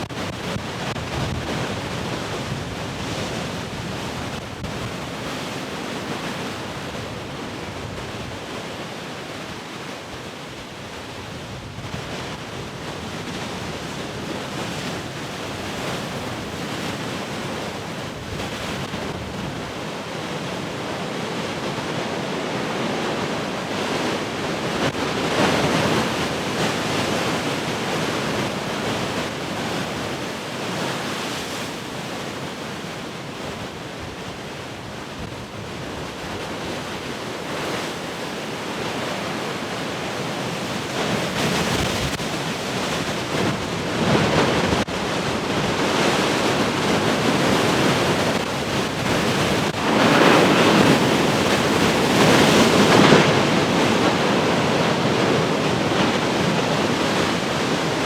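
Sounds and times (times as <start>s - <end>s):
wind on microphone: 0.0s - 9.0s, 10.8s - 58.0s
ocean waves breaking: 12.5s - 58.0s.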